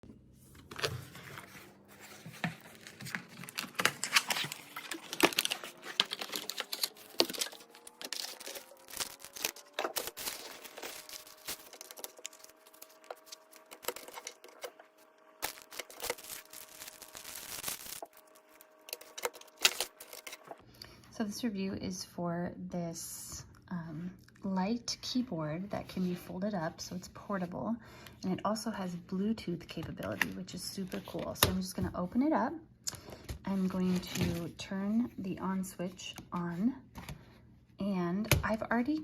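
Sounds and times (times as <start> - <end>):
crinkling rustling handling noise: 0.4 - 20.6.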